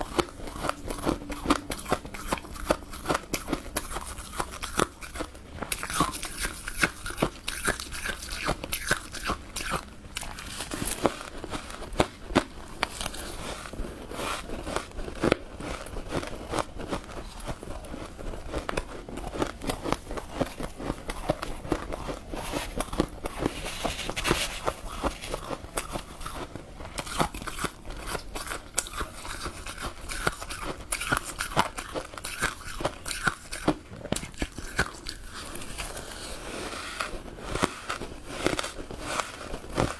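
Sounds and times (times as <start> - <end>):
crunching and chewing ice: 0.0 - 39.9.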